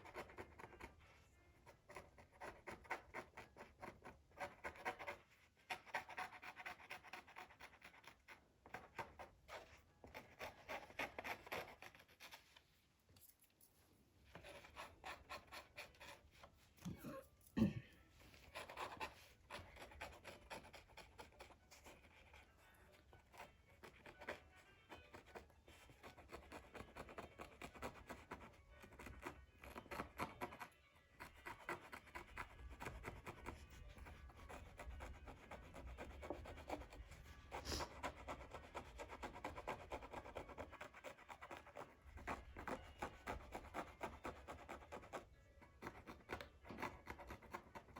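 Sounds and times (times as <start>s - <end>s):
scratching and rubbing on parchment: 18.1s - 30.6s.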